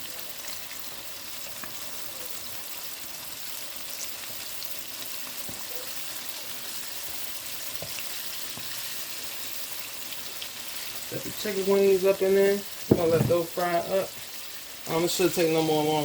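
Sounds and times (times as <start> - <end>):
chicken frying in hot oil: 0.0 - 16.0.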